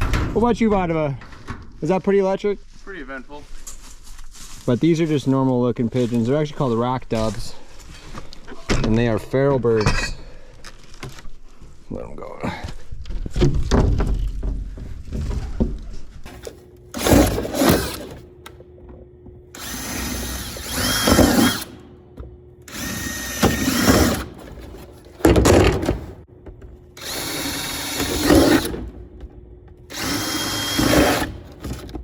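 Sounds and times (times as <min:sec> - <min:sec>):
power drill whining: 0:16.9 - 0:18.2, 0:19.5 - 0:21.8, 0:22.7 - 0:24.5, 0:27.0 - 0:28.8, 0:29.9 - 0:31.6.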